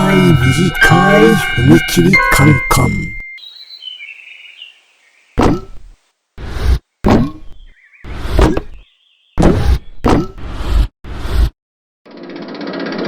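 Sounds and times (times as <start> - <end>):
cartoon thuds and whacks: 5.4 - 8.8, 9.4 - 11.5.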